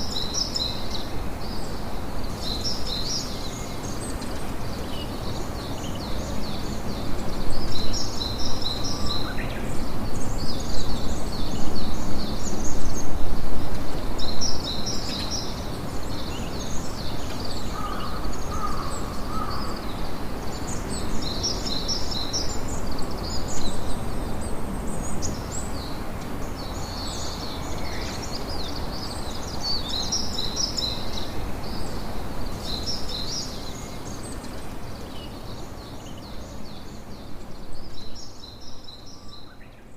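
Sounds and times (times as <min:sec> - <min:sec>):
sea surf and wind rushing: 0:00.0 - 0:37.9.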